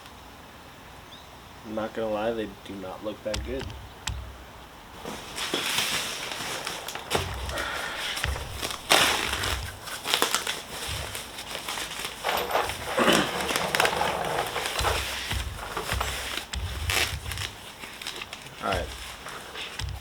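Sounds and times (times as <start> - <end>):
sharp knocks: 3.3 - 5.2, 6.2 - 10.0, 12.2 - 20.0
plastic packaging crinkling: 5.0 - 20.0.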